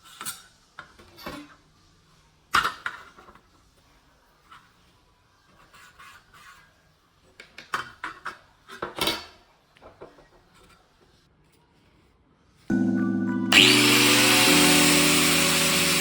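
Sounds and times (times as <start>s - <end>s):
loud steady pitched hum: 12.7s - 16.0s.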